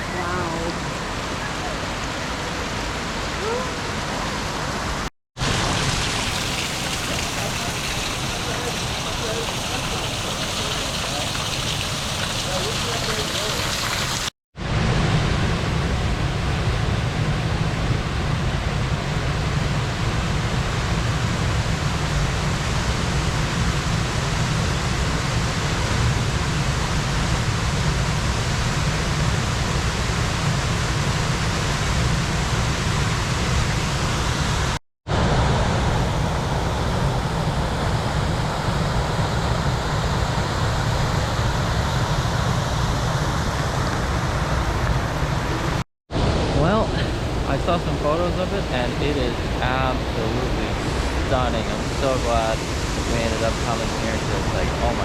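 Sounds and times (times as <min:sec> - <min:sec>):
waterfall rushing: 0:00.0 - 0:14.3, 0:28.2 - 0:55.0.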